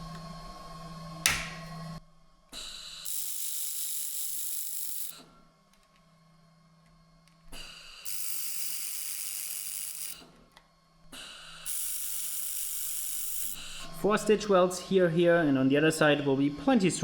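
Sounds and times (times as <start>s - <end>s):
steady low hum: 0.0s - 17.0s
laser welder hissing: 2.6s - 5.3s, 7.5s - 10.4s, 11.2s - 14.0s.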